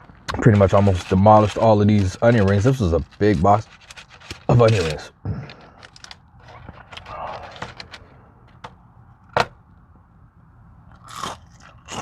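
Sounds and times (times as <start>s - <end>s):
clicks and crackles of eating: 10.9s - 12.0s.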